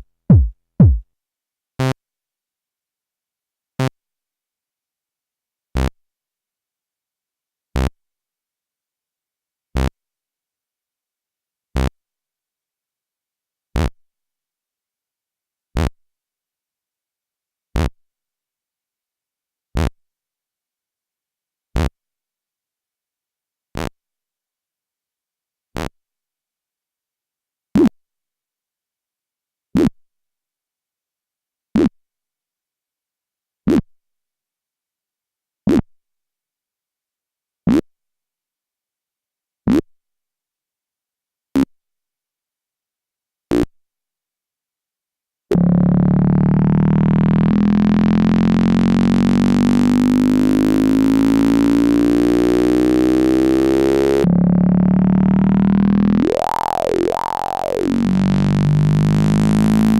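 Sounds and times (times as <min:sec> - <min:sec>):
buzzing synthesizer engine tone: 0:00.0 - 0:01.0, 0:45.5 - 0:59.9
short synthesizer blips: 0:00.0 - 0:01.0, 0:45.5 - 0:50.5, 0:54.0 - 0:59.9.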